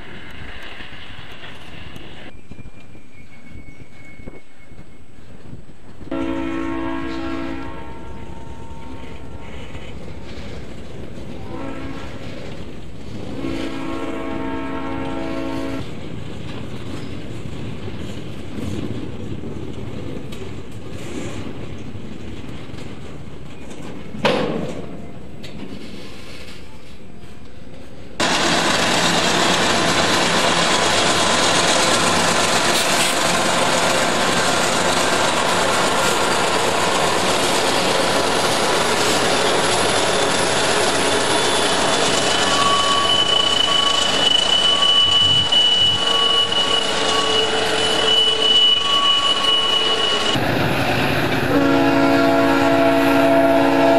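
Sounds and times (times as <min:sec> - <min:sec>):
freight train rolling past: 0:00.0 - 0:53.9
high wheel squeal: 0:31.4 - 0:50.4.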